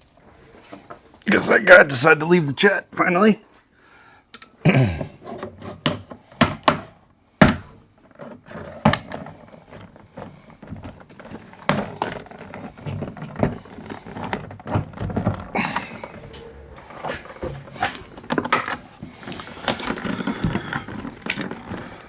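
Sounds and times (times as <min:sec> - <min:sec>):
plastic panel knocks and thunks: 0:05.8 - 0:07.8.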